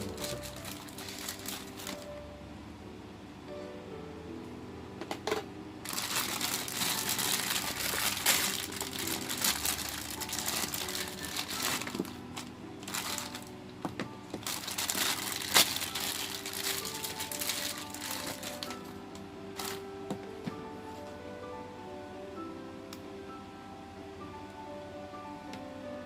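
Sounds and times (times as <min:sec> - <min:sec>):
plastic packaging crinkling: 0:00.0 - 0:02.2, 0:05.8 - 0:19.9.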